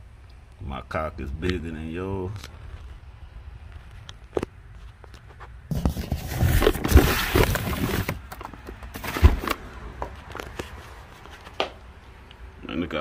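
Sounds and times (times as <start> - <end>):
cardboard boxes rustling and scraping: 5.3 - 11.6
box set down thump: 5.7 - 9.6.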